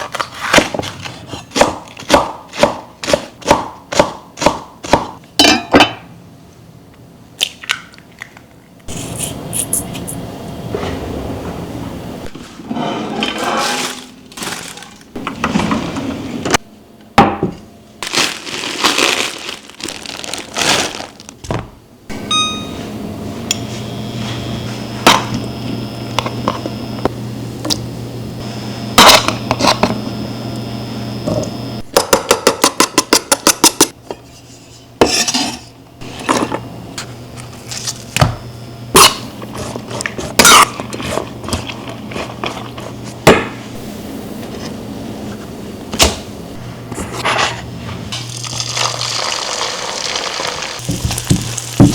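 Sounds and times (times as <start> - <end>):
steady low hum: 8.8 - 18.1, 35.6 - 48.3.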